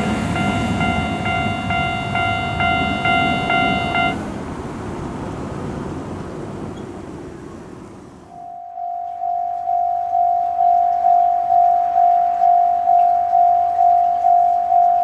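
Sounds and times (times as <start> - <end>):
level crossing bell clanging: 0.0 - 4.2
train rumbling: 0.0 - 8.4, 9.1 - 15.0.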